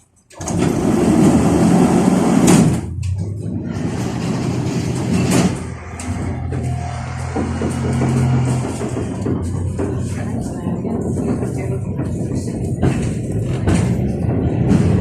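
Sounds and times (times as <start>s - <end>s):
tram mechanical noise: 0.0s - 15.0s
sharp knocks: 4.5s - 15.0s.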